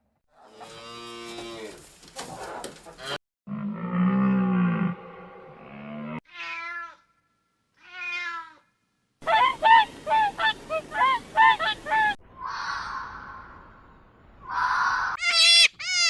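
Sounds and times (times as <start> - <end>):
waterfowl honking: 9.2 - 12.2.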